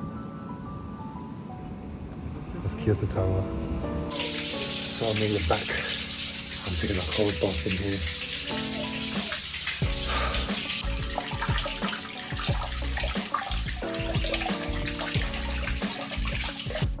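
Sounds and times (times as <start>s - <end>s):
background music: 0.0s - 17.0s
tap water running into bathtub: 4.1s - 17.0s.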